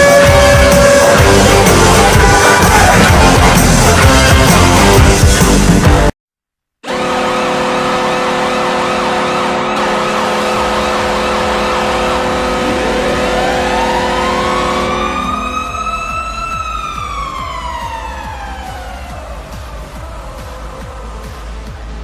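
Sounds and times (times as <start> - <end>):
goal horn blaring: 0.0 - 4.8, 6.8 - 15.7
crowd cheering: 0.0 - 5.6, 9.7 - 22.0.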